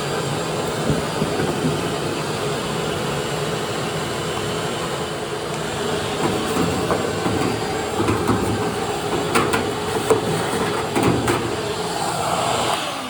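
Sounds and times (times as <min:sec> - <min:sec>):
vacuum cleaner running: 0:00.0 - 0:13.0
sharp clicks and knocks: 0:00.6 - 0:03.0, 0:06.0 - 0:12.0.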